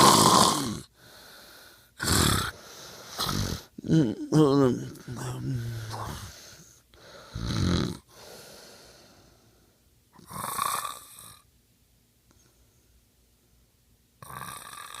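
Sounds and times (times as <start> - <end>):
man snoring: 0.0 - 0.9, 2.0 - 8.7, 10.2 - 11.4, 14.2 - 15.0.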